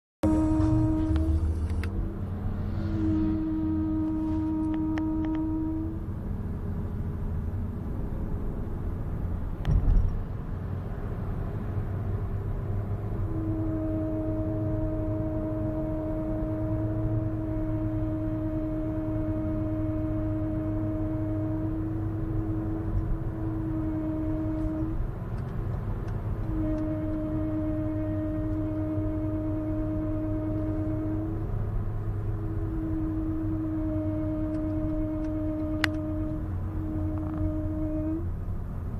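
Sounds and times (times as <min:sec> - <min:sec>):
pitched wheel whine: 0:00.2 - 0:38.9
road rumble: 0:00.2 - 0:38.9
thump: 0:09.7 - 0:10.2.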